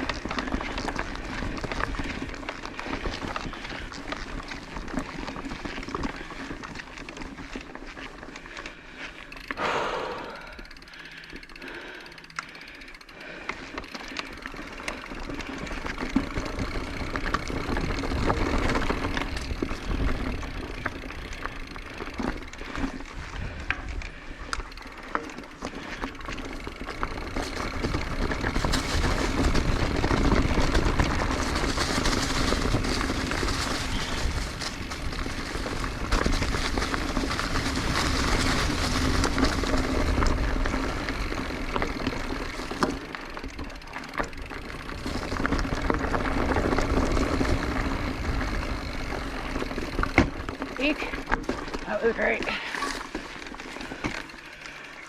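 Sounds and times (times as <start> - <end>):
bike clicks and rattles: 0.0 - 55.0
bike tyre and wind rush: 0.0 - 55.0.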